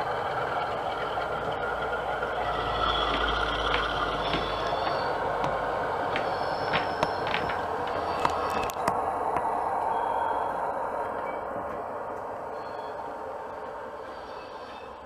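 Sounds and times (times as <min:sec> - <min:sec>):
low rumble: 0:00.0 - 0:15.0
model locomotive engine sound: 0:00.0 - 0:15.0.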